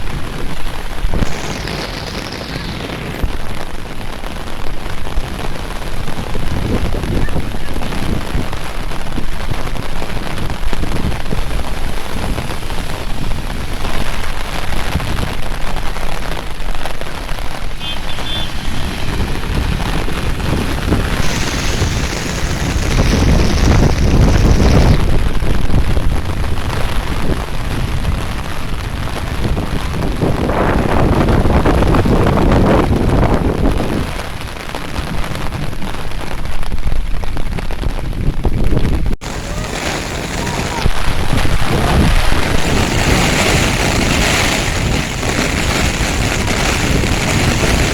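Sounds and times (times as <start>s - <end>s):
steady rain falling: 0.0s - 47.9s
loud rushing noise: 1.1s - 3.6s, 17.7s - 25.2s, 39.2s - 47.9s.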